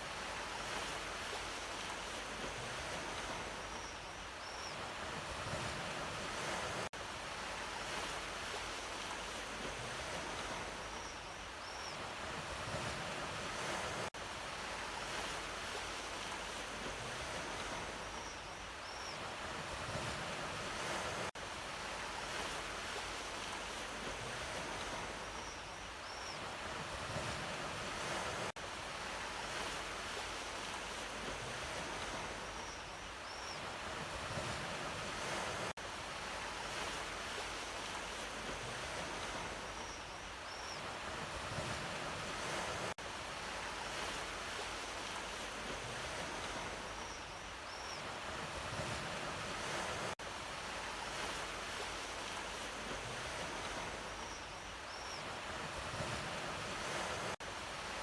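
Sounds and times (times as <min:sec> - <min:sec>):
ocean waves washing in: 0:12.0 - 0:18.3, 0:33.4 - 0:47.2, 0:48.0 - 0:54.4, 0:55.2 - 0:58.0.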